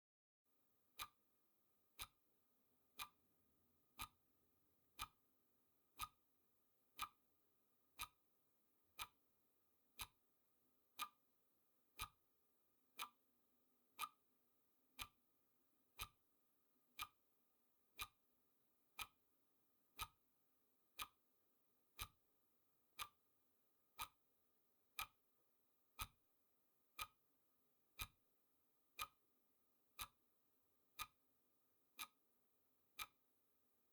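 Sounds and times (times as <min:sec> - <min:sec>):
clock ticking: 0:04.0 - 0:04.2, 0:05.0 - 0:05.2, 0:07.0 - 0:07.2, 0:08.0 - 0:08.2, 0:09.0 - 0:09.2, 0:12.0 - 0:12.2, 0:15.0 - 0:15.2, 0:16.0 - 0:16.2, 0:17.0 - 0:17.2, 0:18.0 - 0:18.2, 0:20.0 - 0:20.2, 0:21.0 - 0:21.2, 0:22.0 - 0:22.2, 0:23.0 - 0:23.2, 0:26.0 - 0:26.2, 0:29.0 - 0:29.2, 0:30.0 - 0:30.2, 0:31.0 - 0:31.2, 0:32.0 - 0:32.2, 0:33.0 - 0:33.2.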